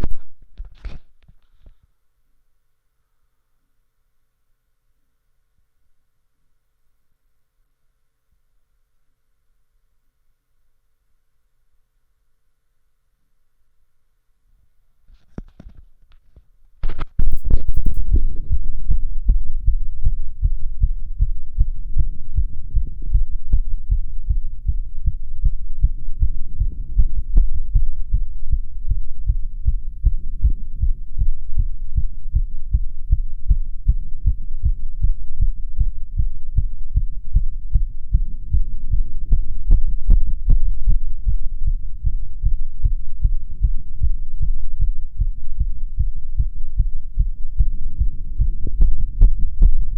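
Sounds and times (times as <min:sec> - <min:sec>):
heartbeat through stethoscope: 0:17.2 - 0:49.9.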